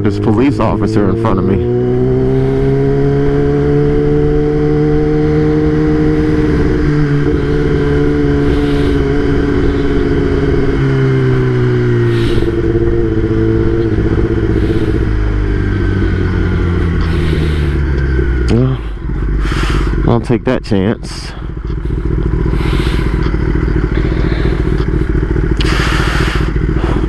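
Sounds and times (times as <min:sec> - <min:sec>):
motorcycle engine running: 0:00.0 - 0:27.0
wind and road noise: 0:00.0 - 0:27.0.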